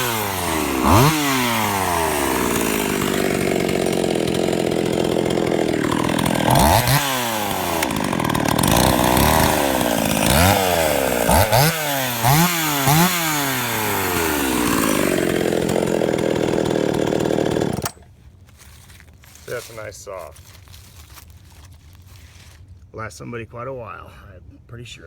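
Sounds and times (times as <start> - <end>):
chainsaw revving: 0.0 - 18.1.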